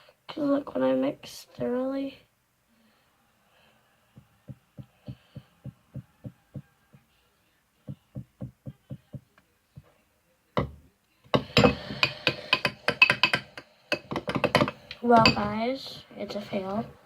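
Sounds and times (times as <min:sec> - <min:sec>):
utensil clattering against bowl: 0:11.4 - 0:15.5.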